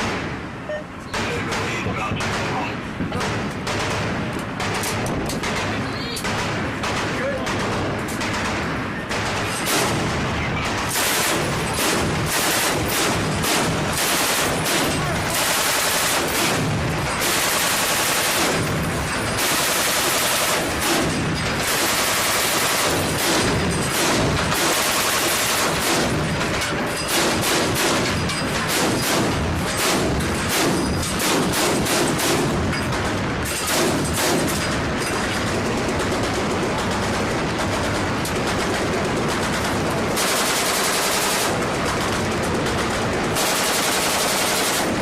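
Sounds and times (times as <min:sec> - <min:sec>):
chain gun firing bursts: 0:10.8 - 0:45.0.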